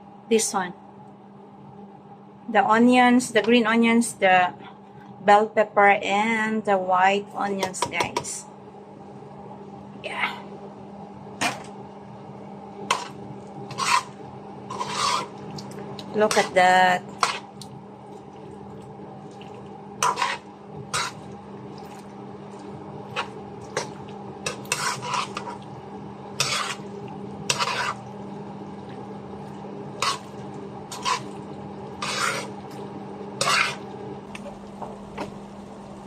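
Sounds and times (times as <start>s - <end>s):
steady low hum: 0.0s - 36.0s
spatula scraping a pan: 12.9s - 15.4s, 16.2s - 17.5s, 20.0s - 21.3s, 23.1s - 25.7s, 26.4s - 28.1s, 29.9s - 32.6s, 33.4s - 33.9s.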